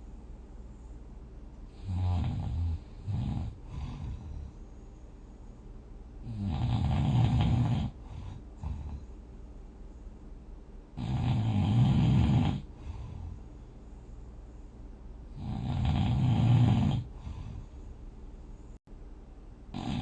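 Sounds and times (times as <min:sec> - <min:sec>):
person snoring: 0:01.7 - 0:04.6, 0:06.2 - 0:09.1, 0:11.0 - 0:13.5, 0:15.3 - 0:17.8, 0:19.7 - 0:20.0.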